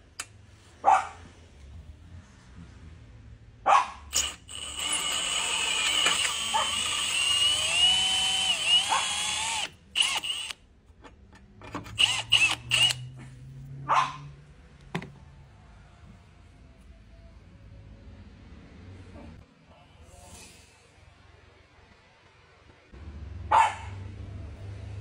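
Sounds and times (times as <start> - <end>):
power drill whining: 4.1 - 10.6, 11.8 - 13.1.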